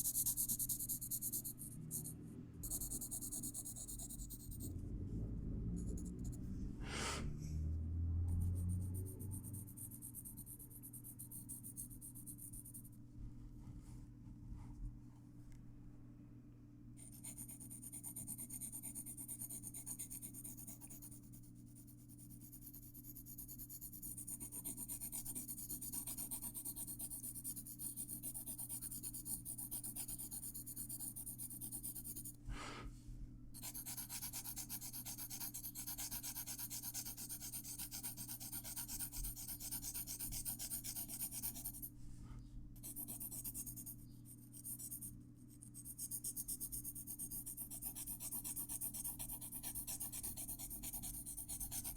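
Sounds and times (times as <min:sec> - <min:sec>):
pencil shading on paper: 0:00.0 - 0:04.7, 0:17.0 - 0:32.4, 0:33.6 - 0:41.9, 0:42.8 - 0:51.9
steady low hum: 0:00.0 - 0:51.9.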